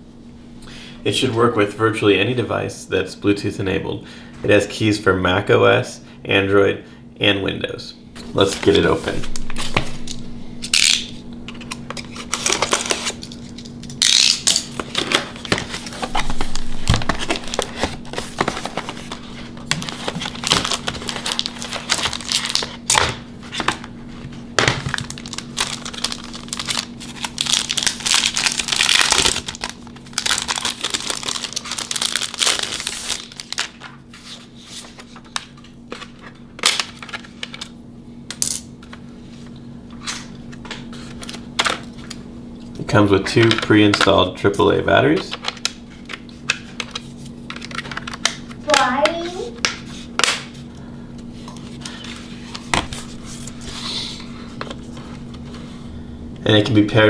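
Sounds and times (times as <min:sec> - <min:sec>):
cardboard and plastic rustling: 0:11.5 - 0:37.7, 0:45.2 - 0:50.1.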